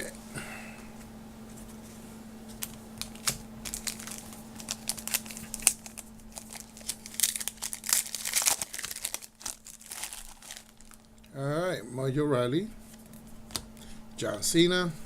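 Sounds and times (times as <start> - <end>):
wrapper tearing and crinkling: 2.5 - 11.3.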